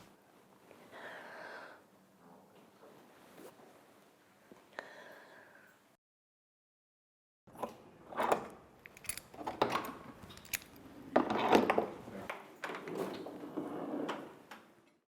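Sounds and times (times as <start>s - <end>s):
clattering handling sounds: 8.2s - 11.9s.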